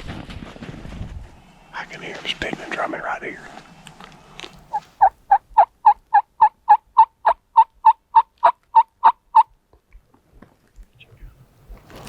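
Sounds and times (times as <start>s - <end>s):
wild turkey yelping: 4.6s - 9.5s.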